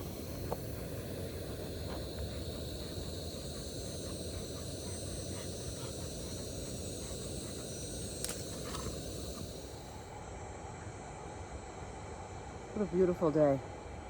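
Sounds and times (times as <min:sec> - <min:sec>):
camping stove hissing: 0:00.0 - 0:10.2
sharp click: 0:08.2 - 0:09.0.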